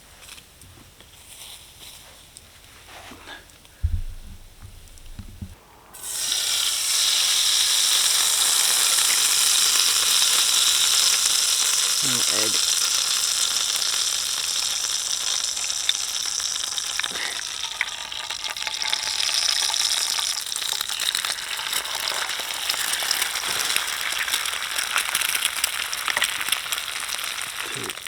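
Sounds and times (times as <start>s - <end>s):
oil popping and crackling: 3.8s - 28.0s
chips sizzling in hot oil: 6.0s - 28.0s.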